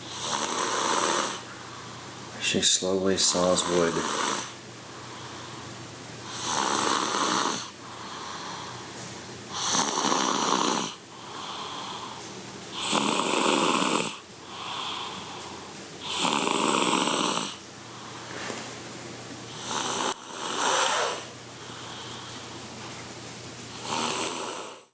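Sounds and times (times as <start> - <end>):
loud snoring: 0.0 - 1.5, 3.6 - 4.6, 6.2 - 8.8, 9.5 - 12.1, 12.7 - 15.4, 16.0 - 17.6, 19.5 - 22.3, 23.7 - 24.9
soft breathing: 3.9 - 12.9, 14.4 - 16.2, 16.9 - 24.9.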